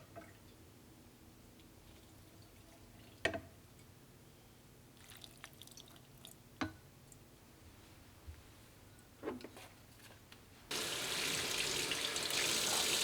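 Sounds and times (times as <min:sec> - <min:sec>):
water dripping: 0:10.7 - 0:13.0.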